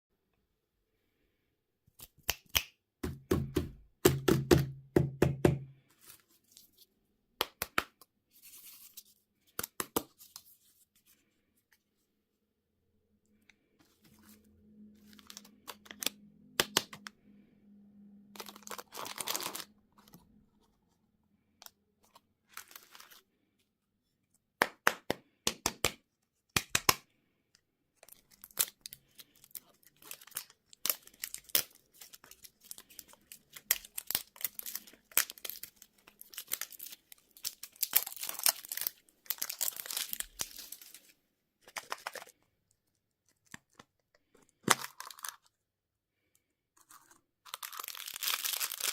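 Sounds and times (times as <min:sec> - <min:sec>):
plastic wrappers crinkling and tearing: 0:18.4 - 0:20.2, 0:22.4 - 0:23.2, 0:28.0 - 0:45.5, 0:46.8 - 0:48.9.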